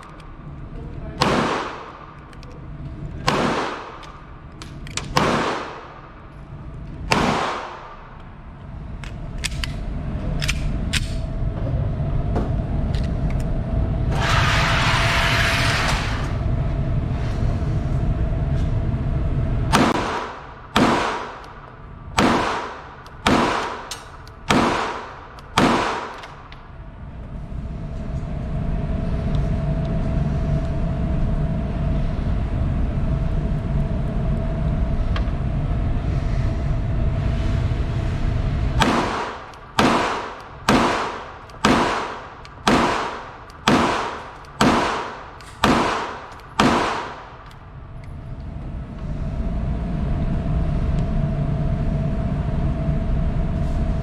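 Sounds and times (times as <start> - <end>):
steady low rumble: 0.0 - 54.0
handgun shots echoing: 1.2 - 2.4, 3.2 - 6.0, 7.1 - 8.0, 19.8 - 21.6, 22.2 - 26.6, 38.8 - 47.6.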